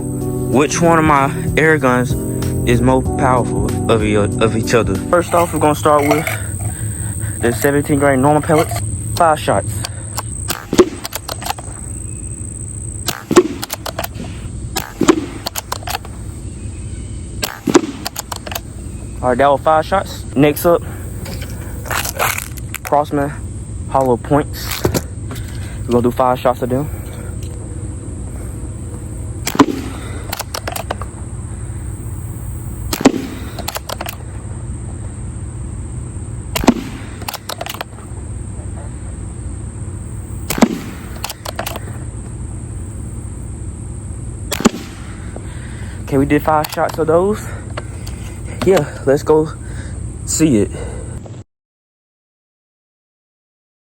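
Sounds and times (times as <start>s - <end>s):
air rifle shots: 5.2s - 12.1s, 13.0s - 16.5s, 17.4s - 19.0s, 29.4s - 31.9s, 32.9s - 34.5s, 36.5s - 38.1s, 40.4s - 42.0s, 44.5s - 45.5s
light mechanical clicks: 7.4s - 11.8s, 13.0s - 16.2s, 17.4s - 18.7s, 29.4s - 31.1s, 32.9s - 34.2s, 36.6s - 38.0s, 40.5s - 42.0s, 46.4s - 47.1s.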